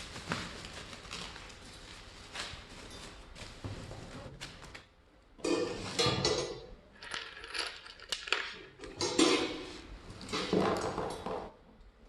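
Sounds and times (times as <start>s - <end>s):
metal parts clinking and clattering: 5.5s - 9.6s.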